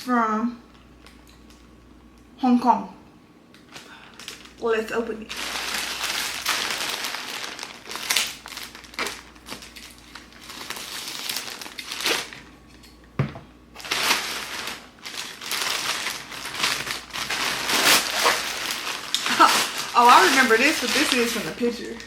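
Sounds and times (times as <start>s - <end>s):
packaging crinkling and rustling: 3.7s - 12.5s, 13.8s - 22.0s.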